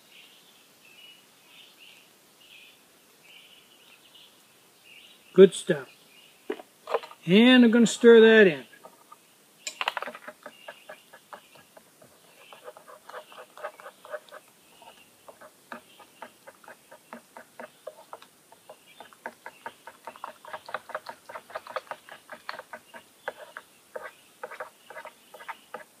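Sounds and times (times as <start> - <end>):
spoon scraping metal pot: 9.7 - 26.0.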